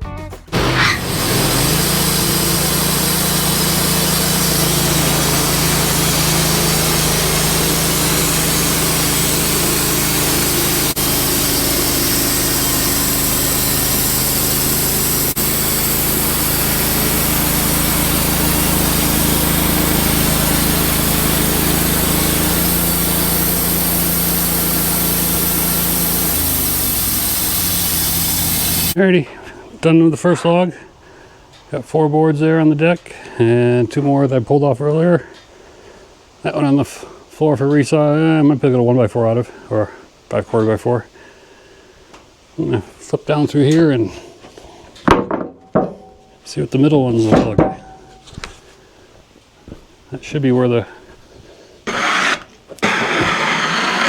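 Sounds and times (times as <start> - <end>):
band sawmill sawing log: 0.5 - 29.0, 51.8 - 54.0.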